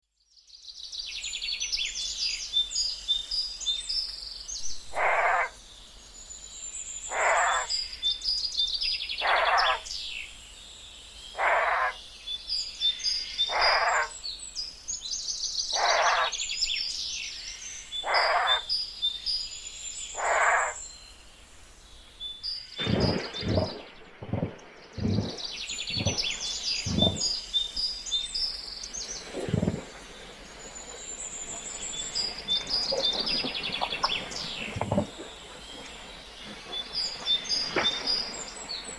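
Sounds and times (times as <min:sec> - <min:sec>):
birds chirping and singing: 0:07.0 - 0:10.2, 0:11.3 - 0:14.2, 0:15.5 - 0:20.9, 0:22.3 - 0:38.8.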